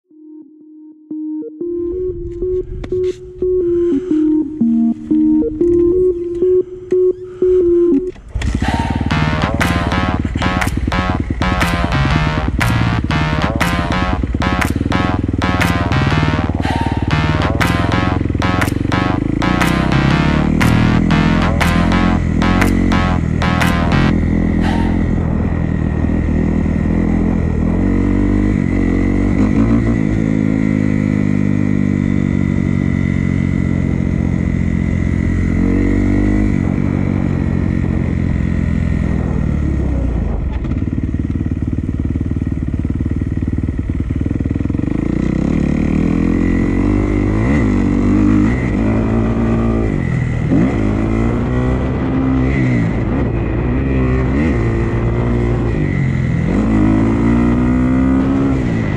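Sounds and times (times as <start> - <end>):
dirt bike engine revving: 8.3 - 38.1, 44.6 - 58.9.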